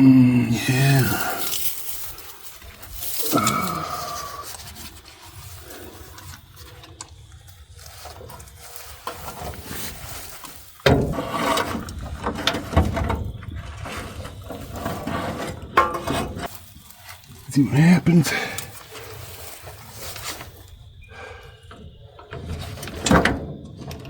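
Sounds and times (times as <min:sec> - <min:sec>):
metal scraping and clicking: 0:08.0 - 0:17.3.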